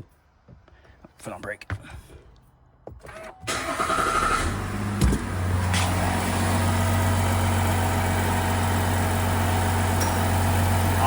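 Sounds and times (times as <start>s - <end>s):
diesel engine starting and idling: 3.1s - 11.0s.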